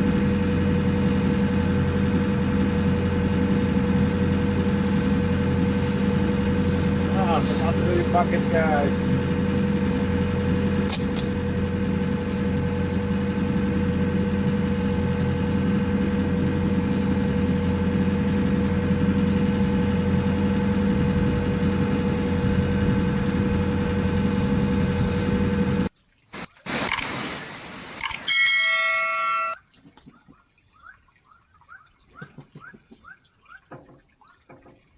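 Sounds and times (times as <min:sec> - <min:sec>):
diesel engine running: 0:00.0 - 0:25.9
short tone: 0:28.1 - 0:29.6
faint high chirp: 0:28.3 - 0:29.6.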